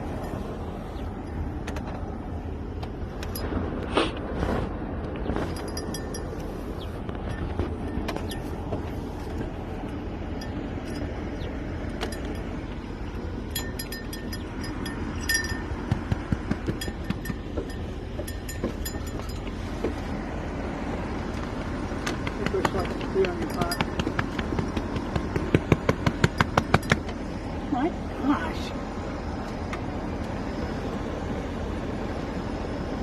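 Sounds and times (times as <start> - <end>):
light metallic clinks: 5.5 - 6.5, 10.4 - 11.4, 12.0 - 16.0, 16.7 - 19.6.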